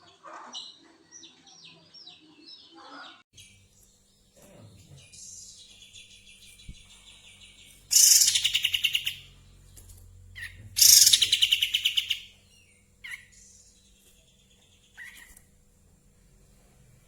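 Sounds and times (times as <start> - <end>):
bird chattering song: 4.5 - 9.4, 10.4 - 15.4
bird single chirps: 7.9 - 9.3.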